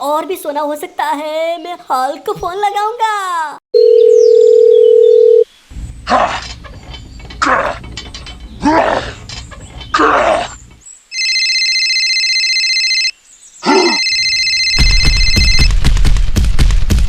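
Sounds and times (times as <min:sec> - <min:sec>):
telephone ringback tone: 0:03.8 - 0:05.4, 0:11.1 - 0:13.1, 0:14.0 - 0:15.7
loud clattering noise: 0:05.7 - 0:10.0
deep rumble: 0:05.7 - 0:10.8.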